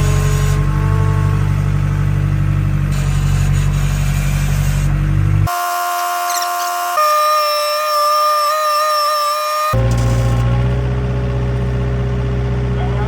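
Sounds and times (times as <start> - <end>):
horn blasts: 0.0 - 2.3, 5.5 - 13.0
skid steer engine running: 0.0 - 13.0.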